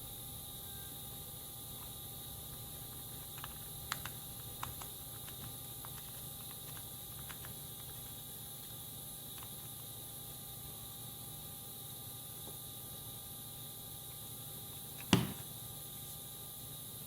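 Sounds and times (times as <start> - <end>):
background hiss and hum: 0.0 - 17.0
small hard parts clicking: 3.0 - 8.2.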